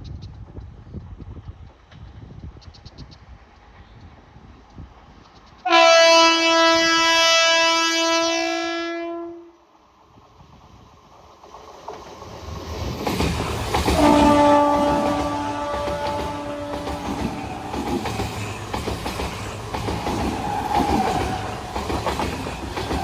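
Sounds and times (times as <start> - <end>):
train running noise: 0.0 - 7.2, 9.8 - 23.0
train horn blast: 5.6 - 9.6, 13.9 - 17.4.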